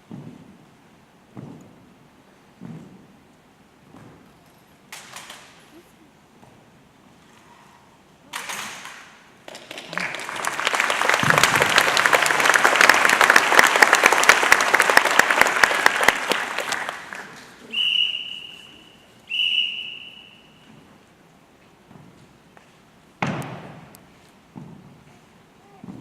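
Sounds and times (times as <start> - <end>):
audience applauding: 9.5 - 18.0
whistle blasts: 17.7 - 20.7.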